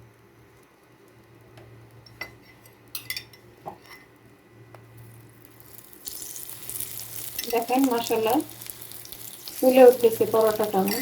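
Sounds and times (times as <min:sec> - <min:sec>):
metal utensils clinking on cookware: 0:09.6 - 0:11.0.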